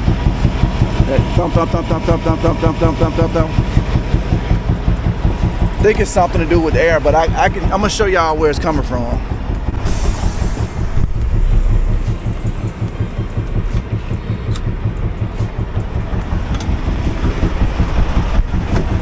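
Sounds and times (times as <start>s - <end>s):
truck engine rhythmic thumping: 0.0s - 19.0s
air hiss: 9.8s - 13.0s.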